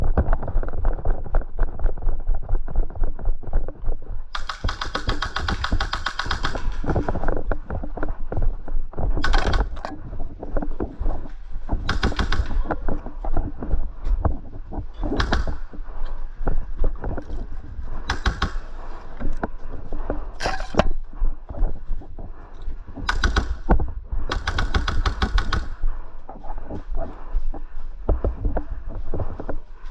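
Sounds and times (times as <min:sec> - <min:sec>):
airsoft gun bursts: 0:04.4 - 0:06.9.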